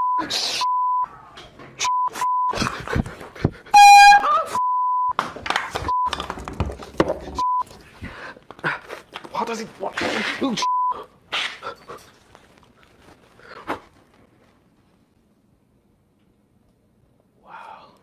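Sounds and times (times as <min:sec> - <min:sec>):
censor beep: 0:00.0 - 0:01.1, 0:03.8 - 0:05.1, 0:07.4 - 0:07.6, 0:10.6 - 0:11.0.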